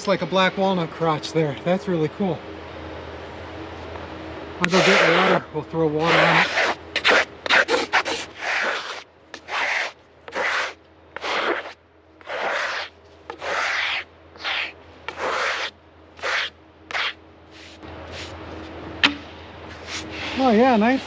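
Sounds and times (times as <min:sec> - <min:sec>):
brush sweeping sawdust off wood: 0:04.6 - 0:18.7, 0:19.7 - 0:21.0.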